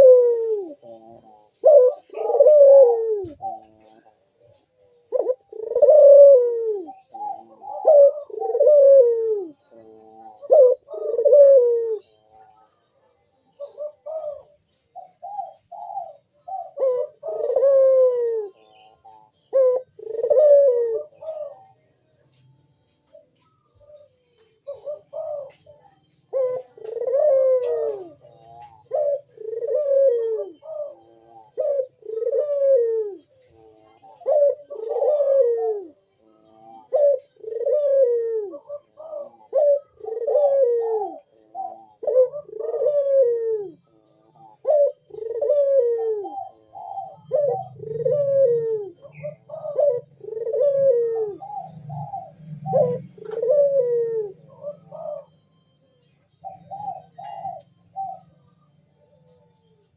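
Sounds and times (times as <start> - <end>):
dove cooing: 0.0 - 59.9.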